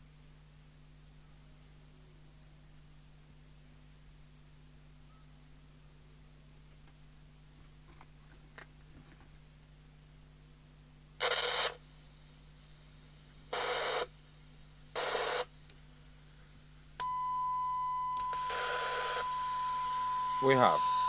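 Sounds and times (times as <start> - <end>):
radio hiss bursts: 11.2 - 11.8, 13.5 - 14.1, 15.0 - 15.5.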